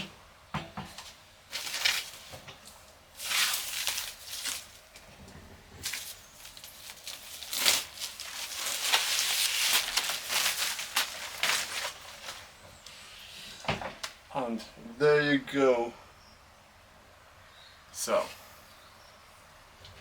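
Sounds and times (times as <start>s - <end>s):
packaging rustling and scraping: 1.0s - 12.8s.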